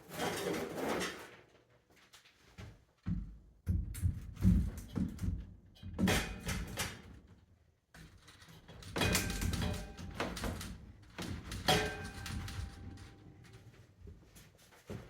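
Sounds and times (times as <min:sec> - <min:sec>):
sheet-metal pipe knocking and clanking: 0:11.2 - 0:13.1.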